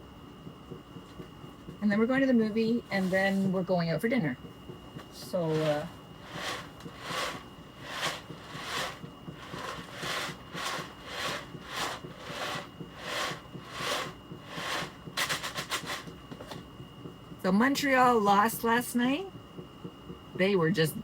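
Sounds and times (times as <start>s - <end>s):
rhythmic rubbing strokes: 5.2s - 16.6s.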